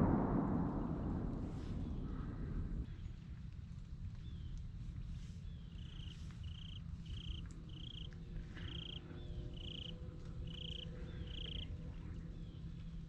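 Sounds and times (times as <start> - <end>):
steady low rumble: 0.0 - 13.0
insect chirping: 5.7 - 11.7.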